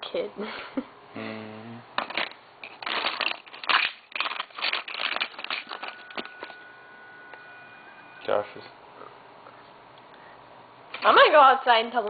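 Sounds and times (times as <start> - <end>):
crackling and rustling: 2.0 - 6.6
low buzzing tone: 5.5 - 10.3.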